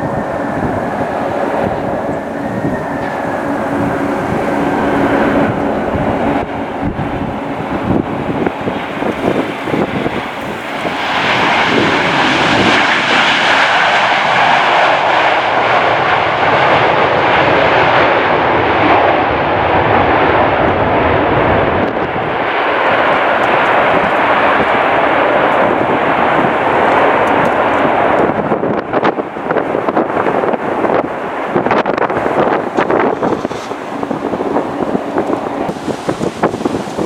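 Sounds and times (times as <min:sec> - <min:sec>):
jet engines running: 0:00.0 - 0:37.0
wind buffeting microphone: 0:00.0 - 0:37.0.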